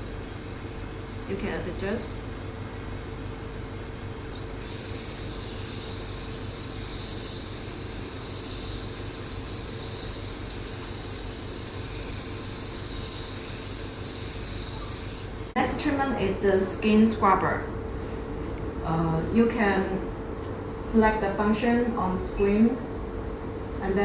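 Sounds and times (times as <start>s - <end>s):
machine humming: 0.0s - 15.6s
water mist spray hissing: 4.4s - 15.4s.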